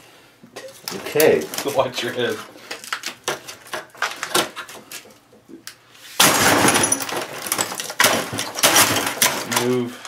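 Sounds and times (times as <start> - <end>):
plastic clattering: 0.6 - 5.5, 6.2 - 9.9
glass breaking: 6.2 - 9.7
computer hardware crashing: 6.2 - 9.8.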